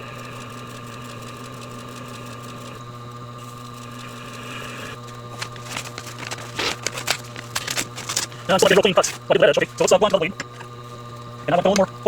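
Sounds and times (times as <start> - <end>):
electric motor humming: 0.0 - 12.0.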